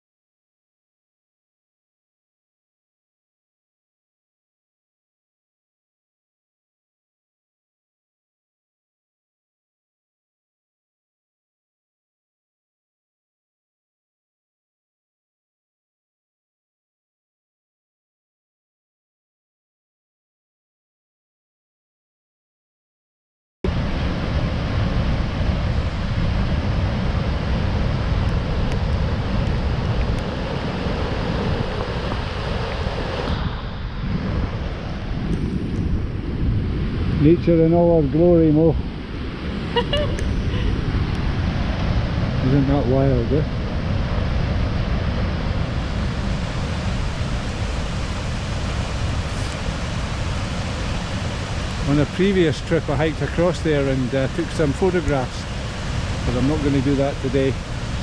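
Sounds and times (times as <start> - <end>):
strong wind buffeting microphone: 23.7 - 58.0.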